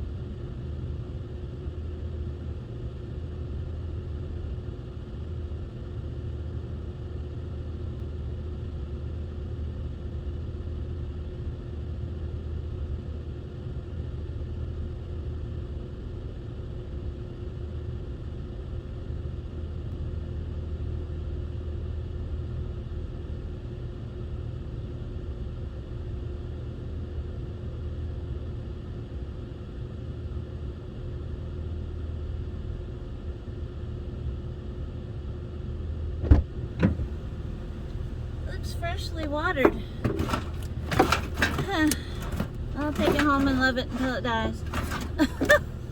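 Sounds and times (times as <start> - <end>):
car engine rumble inside cabin: 36.2 - 45.9.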